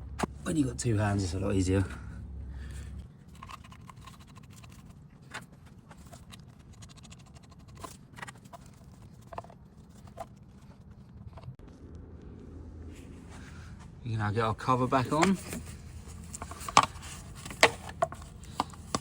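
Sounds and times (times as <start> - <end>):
low steady hum: 0.0 - 19.0
clicks and knocks of car parts: 15.1 - 19.0.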